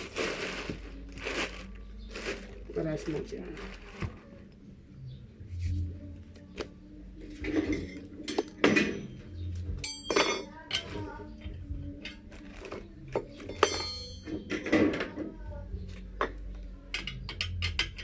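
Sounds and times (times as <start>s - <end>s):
metal tools clinking: 7.4s - 9.2s, 9.8s - 10.9s, 13.5s - 14.9s
ringing metal clink: 9.8s - 10.6s, 13.5s - 14.7s.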